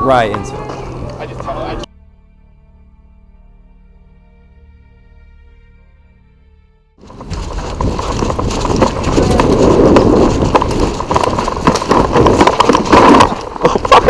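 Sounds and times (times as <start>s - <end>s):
footsteps running on ground: 7.0s - 14.0s
gear knocking and rustling: 7.0s - 14.0s.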